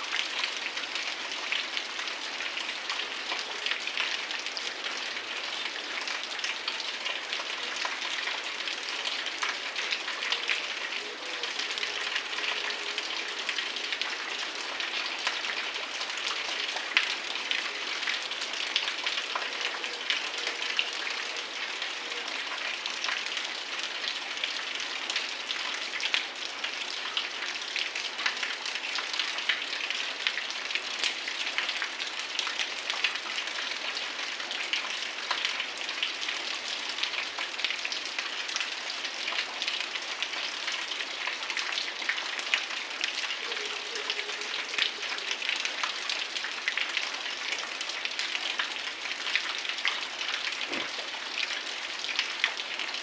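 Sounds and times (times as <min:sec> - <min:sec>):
heavy rain falling: 0:00.0 - 0:53.0
raindrops ticking on surfaces: 0:00.0 - 0:53.0.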